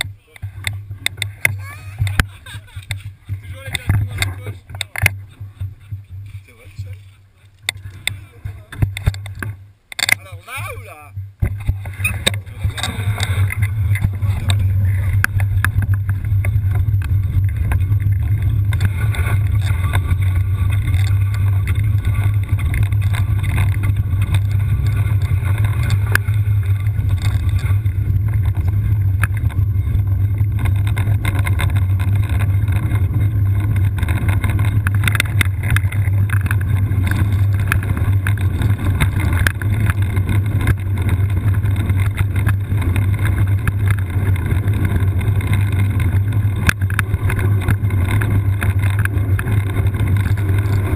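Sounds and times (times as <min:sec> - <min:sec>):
wheel and frame rattles: 0:00.0 - 0:50.9
wheelchair rolling on rough trail: 0:00.0 - 0:50.9.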